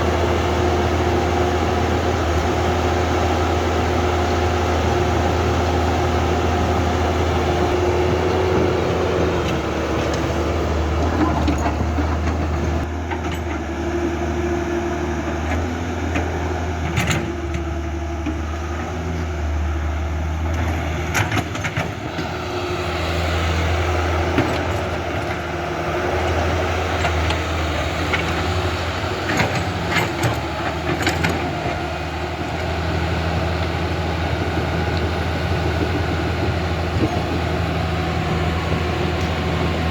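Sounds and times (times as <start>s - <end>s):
low mechanical drone: 16.9s - 39.9s.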